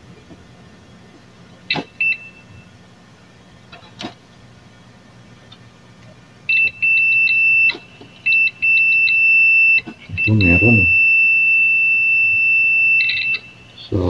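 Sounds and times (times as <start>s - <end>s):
multimeter continuity beeping: 1.7s - 2.7s, 6.5s - 14.0s.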